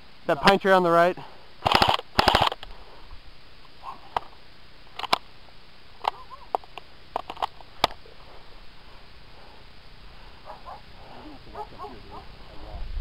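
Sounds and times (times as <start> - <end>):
airsoft gun snaps: 1.6 - 2.7.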